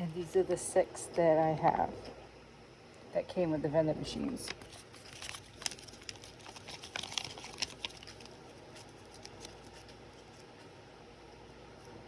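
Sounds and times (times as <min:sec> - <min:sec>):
plastic packaging crinkling: 0:04.4 - 0:10.8.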